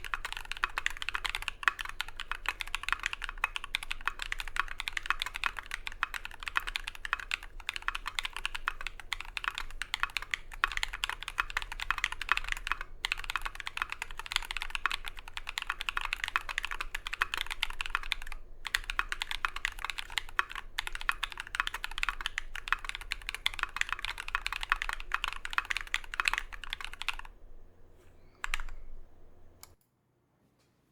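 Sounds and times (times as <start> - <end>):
fast mechanical keyboard typing: 0.0 - 29.8.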